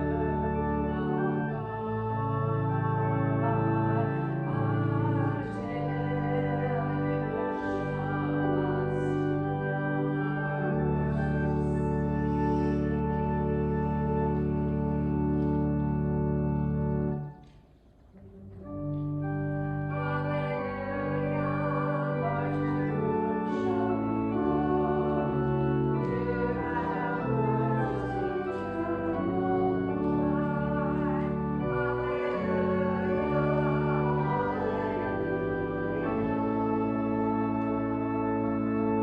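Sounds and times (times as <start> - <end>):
church organ chords: 0.0 - 17.5, 18.2 - 39.0
voices singing: 19.9 - 37.0.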